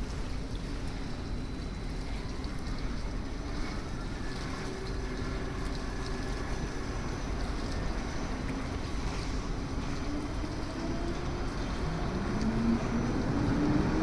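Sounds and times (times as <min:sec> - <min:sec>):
low rumble and hiss: 0:00.0 - 0:14.0
faint rising whine: 0:03.5 - 0:14.0.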